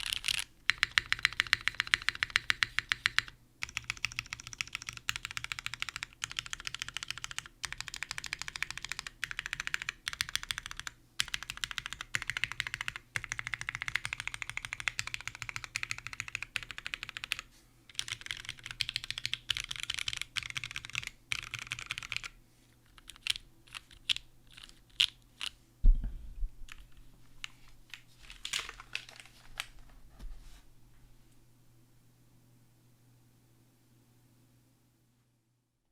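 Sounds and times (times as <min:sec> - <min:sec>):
mechanical keyboard clacking: 0:00.0 - 0:22.3
heavy thump: 0:25.8 - 0:26.6.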